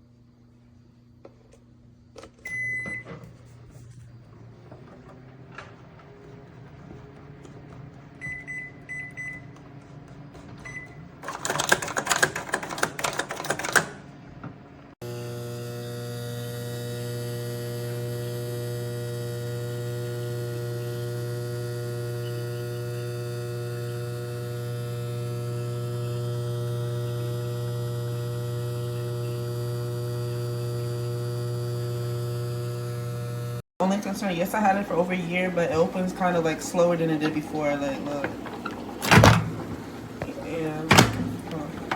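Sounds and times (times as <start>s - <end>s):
microwave oven humming: 0.0s - 12.3s, 12.9s - 41.9s
microwave button beeps: 2.4s - 3.2s, 8.2s - 9.6s, 10.6s - 11.0s, 19.8s - 31.3s.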